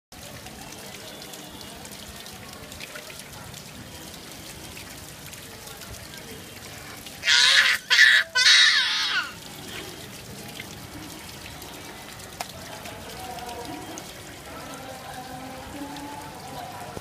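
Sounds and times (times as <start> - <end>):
rain falling: 0.1 - 17.0
toddler laughing: 7.2 - 9.4.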